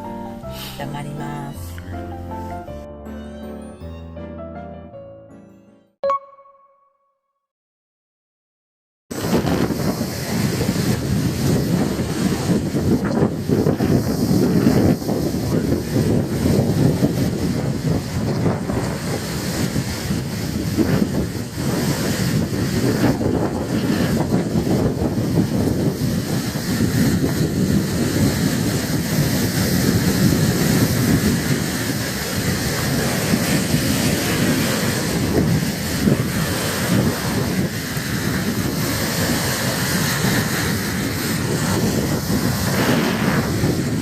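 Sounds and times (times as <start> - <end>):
wind buffeting microphone: 9.1 - 44.0.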